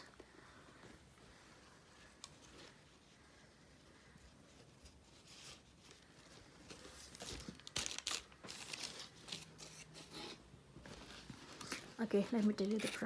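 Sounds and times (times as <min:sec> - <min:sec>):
packaging rustling and crinkling: 0:04.4 - 0:13.0.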